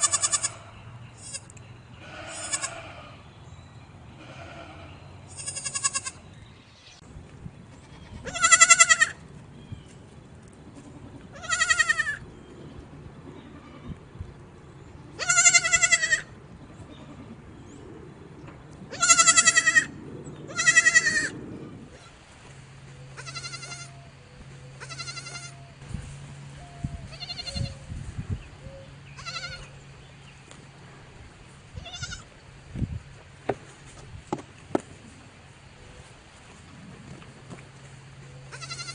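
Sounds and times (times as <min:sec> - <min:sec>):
goat bleating: 0:00.0 - 0:03.3, 0:04.2 - 0:06.3, 0:07.7 - 0:09.2, 0:10.8 - 0:12.2, 0:15.2 - 0:17.3, 0:18.9 - 0:22.2, 0:23.2 - 0:24.1, 0:24.8 - 0:25.6, 0:27.1 - 0:27.8, 0:29.2 - 0:29.8, 0:31.8 - 0:32.3, 0:38.5 - 0:38.9.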